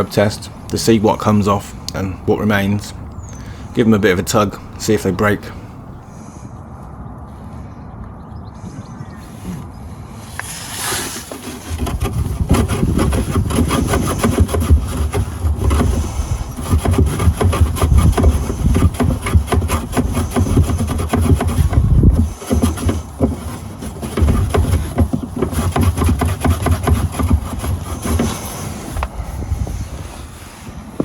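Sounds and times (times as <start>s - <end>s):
hand tool scraping rusty metal pipe: 10.2s - 31.0s.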